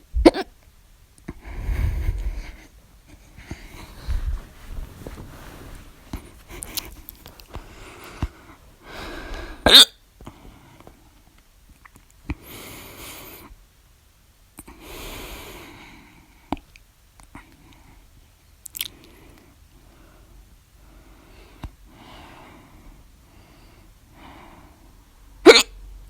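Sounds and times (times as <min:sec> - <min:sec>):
person hiccuping: 0:00.2 - 0:00.5, 0:09.6 - 0:09.9, 0:25.5 - 0:25.8.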